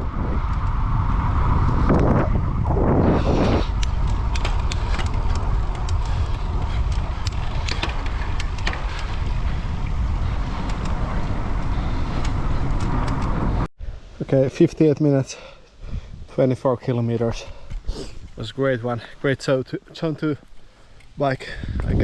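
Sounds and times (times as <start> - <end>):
wind rushing over microphone: 0.0 - 14.2, 15.8 - 16.4, 21.6 - 22.0.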